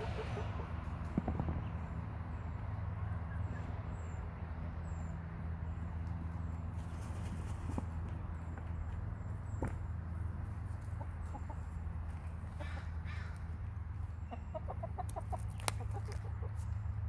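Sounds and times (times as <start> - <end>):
steady low rumble: 0.0 - 15.2
hens scuffing in dry dirt: 6.0 - 14.2.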